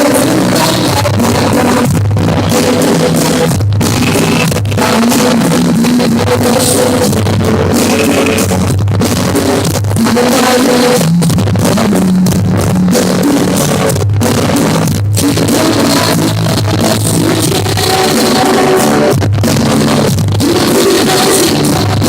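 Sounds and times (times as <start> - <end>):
rock band music: 0.0 - 22.0.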